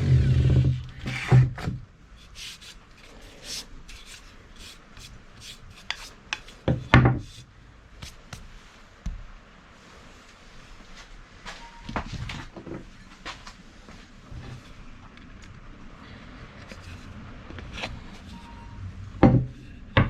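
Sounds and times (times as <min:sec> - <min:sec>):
scrapes: 0:00.0 - 0:08.4
hand rubbing strokes: 0:02.2 - 0:06.6.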